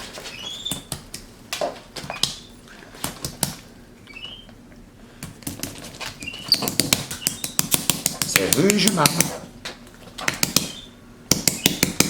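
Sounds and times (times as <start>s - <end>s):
monkey squeaking: 0.3s - 0.9s, 4.1s - 4.5s, 6.2s - 7.9s, 10.5s - 12.0s
hands slapping slime: 3.0s - 3.6s, 5.2s - 9.4s, 10.2s - 12.0s.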